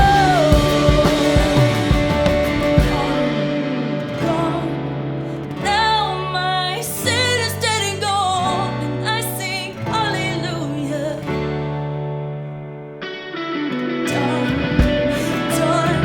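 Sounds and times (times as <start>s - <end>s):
steady bass: 0.0s - 4.9s
person singing: 0.0s - 11.4s, 14.0s - 16.0s
guitar: 0.0s - 16.0s.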